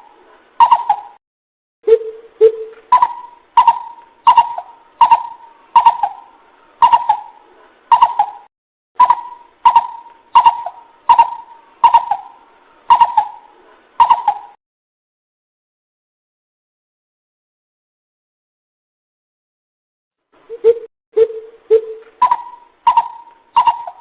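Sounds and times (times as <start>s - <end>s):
bird hooting call: 0.0s - 1.2s, 1.9s - 14.6s, 20.5s - 24.0s.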